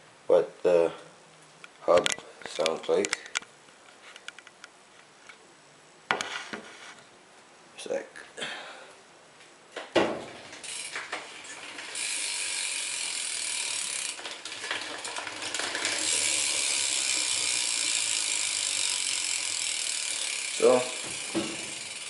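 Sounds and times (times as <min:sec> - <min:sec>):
bike hub ratchet buzz: 0:10.6 - 0:22.0.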